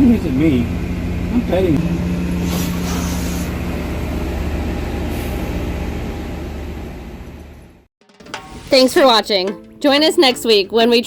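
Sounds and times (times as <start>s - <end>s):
boat motor drone: 0.0s - 7.8s
short bursts of hissing: 2.4s - 3.6s.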